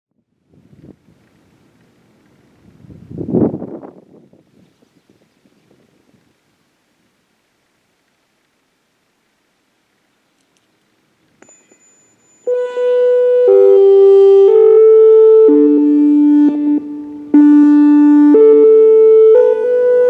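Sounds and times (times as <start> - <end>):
faint click: 10.3 - 11.5
siren alert chimes: 11.4 - 20.0.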